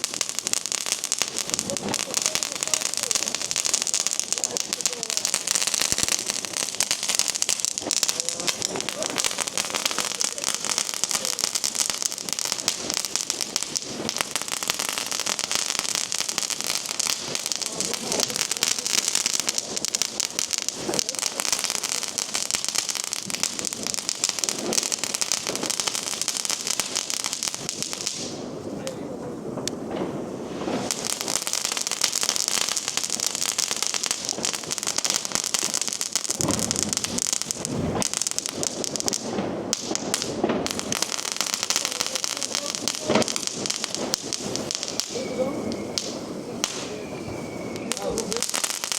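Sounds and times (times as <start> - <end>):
firework crackling: 0.0 - 48.9
deep firework thumps: 34.2 - 48.9.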